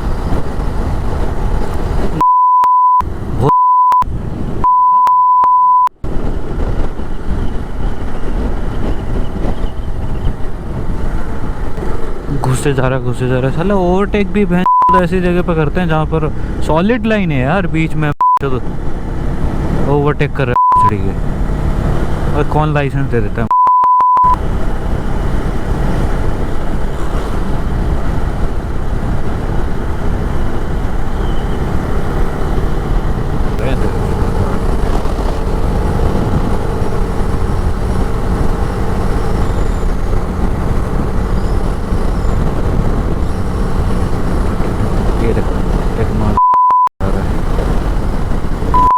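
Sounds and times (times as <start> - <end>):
wind rushing over microphone: 0.0 - 2.3, 3.0 - 4.8, 5.9 - 17.5, 18.6 - 23.5, 24.2 - 46.4, 47.0 - 48.9
motorcycle engine and road rumble: 0.0 - 2.4, 3.0 - 5.0, 5.9 - 23.6, 24.2 - 46.4, 47.0 - 48.9
steady high beep tone: 2.2 - 5.9, 14.6 - 15.0, 20.5 - 20.9, 23.5 - 24.4, 46.4 - 46.9.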